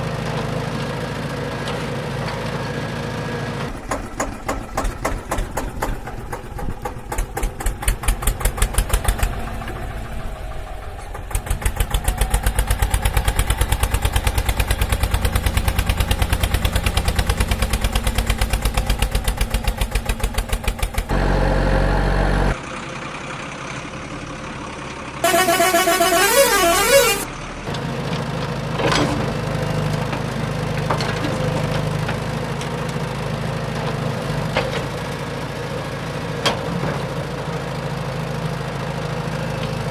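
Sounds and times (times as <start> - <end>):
vehicle engine chugging: 3.7 - 28.0
low horn blast: 25.2 - 27.3
warbling horn: 25.2 - 27.3.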